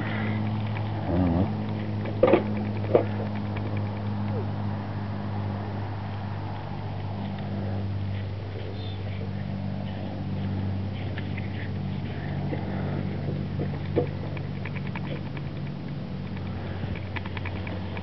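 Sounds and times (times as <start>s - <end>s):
vehicle engine droning: 0.0s - 18.0s
small clicks: 0.4s - 4.4s, 13.3s - 18.0s.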